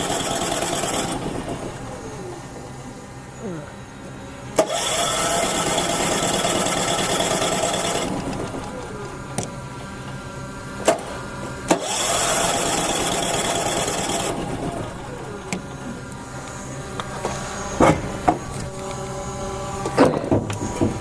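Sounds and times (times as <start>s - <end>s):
small motor whirring: 4.6s - 9.2s, 11.7s - 20.9s.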